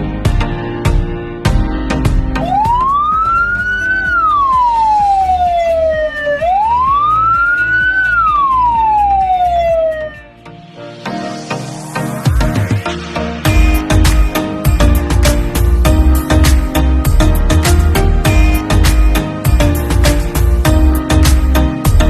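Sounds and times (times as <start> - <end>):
background music with a beat: 0.0 - 22.0
ambulance siren wailing: 2.4 - 10.4.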